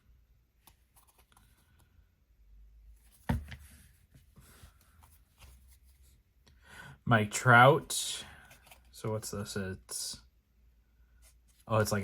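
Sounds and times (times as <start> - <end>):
trading cards rustling and clicking: 0.6 - 1.9, 8.3 - 9.4.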